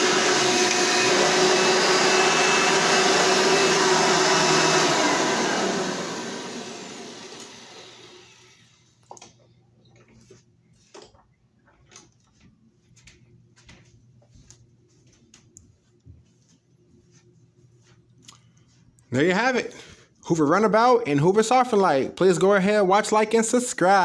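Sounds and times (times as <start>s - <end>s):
vacuum cleaner motor spinning down: 0.0s - 8.9s.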